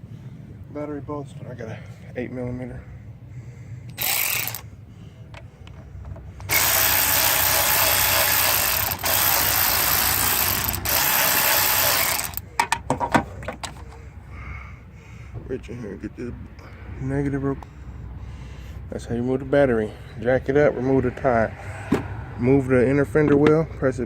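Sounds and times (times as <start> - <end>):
ratchet wrench ratcheting: 3.9 - 4.7, 6.4 - 12.5.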